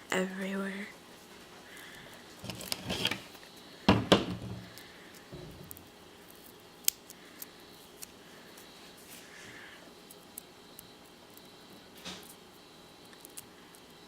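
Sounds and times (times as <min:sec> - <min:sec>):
small objects rustling and knocking: 0:02.4 - 0:04.8.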